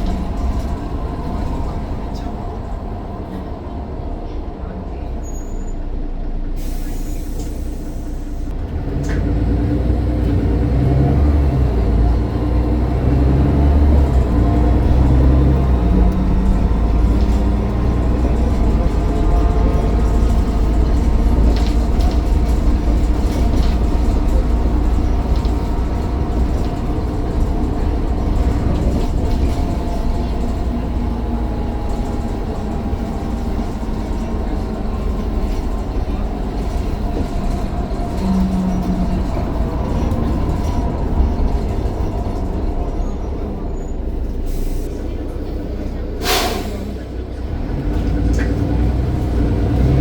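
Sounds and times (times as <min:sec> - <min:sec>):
bus engine and road rumble: 0:00.0 - 0:50.0.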